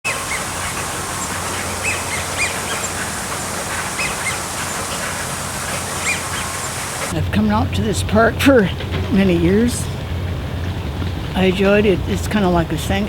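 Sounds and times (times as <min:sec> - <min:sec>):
wild birds chirping and calling: 0:00.1 - 0:07.1
low background hum: 0:00.1 - 0:13.0.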